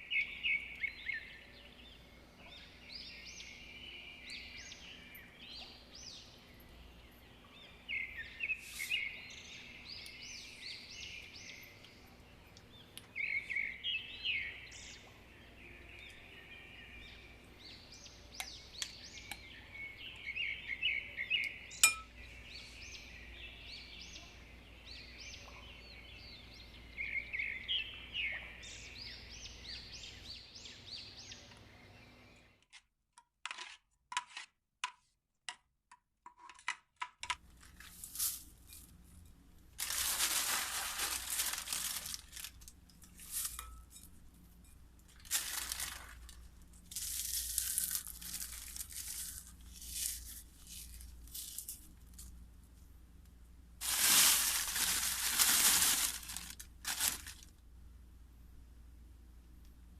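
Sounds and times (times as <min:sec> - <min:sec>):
birds chirping: 0:00.0 - 0:32.6.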